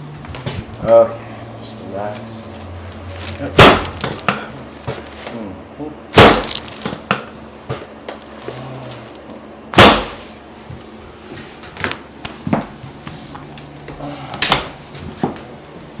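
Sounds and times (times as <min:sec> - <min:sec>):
loud sharp joint cracks: 0:03.2 - 0:04.4, 0:06.2 - 0:07.2.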